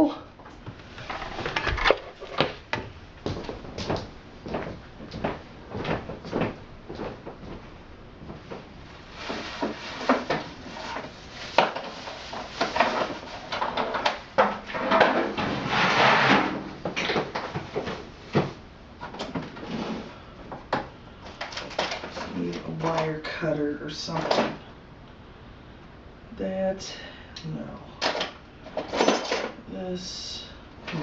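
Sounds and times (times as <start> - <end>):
tools clinking in a drawer: 28.0 - 29.6.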